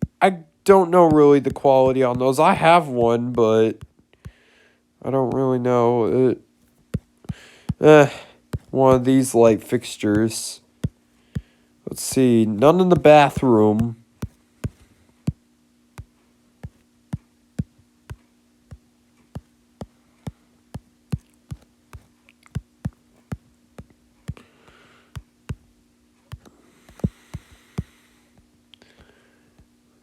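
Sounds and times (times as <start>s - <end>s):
low steady hum: 0.0s - 30.0s
computer mouse clicking: 21.1s - 23.0s, 26.3s - 27.9s.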